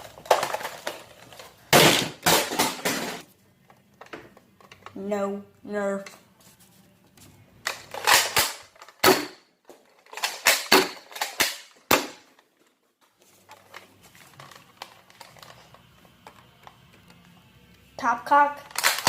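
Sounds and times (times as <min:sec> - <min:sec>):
toy blaster clacks and snaps: 0:10.1 - 0:12.1, 0:18.6 - 0:19.0.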